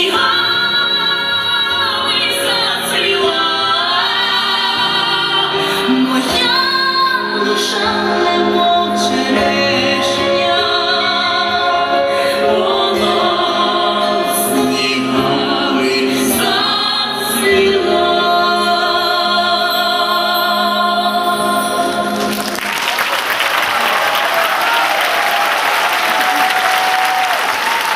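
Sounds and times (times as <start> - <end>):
vocal duet with instrumental backing: 0.0 - 22.6
audience applause: 22.2 - 27.9.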